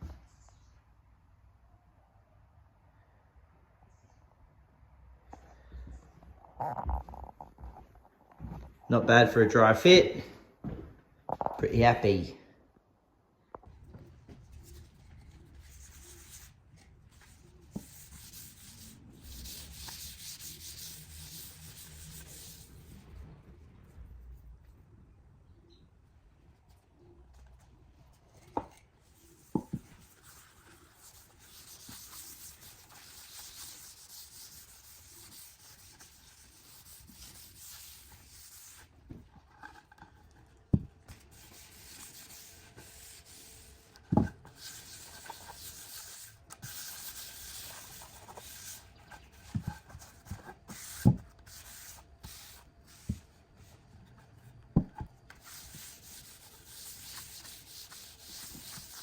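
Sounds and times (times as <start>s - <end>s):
abrasive rubbing on wood: 17.2s - 22.8s, 29.2s - 38.9s.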